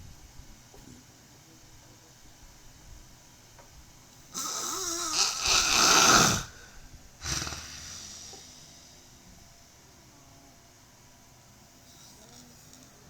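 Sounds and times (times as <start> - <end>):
person snoring loudly: 4.4 - 9.0.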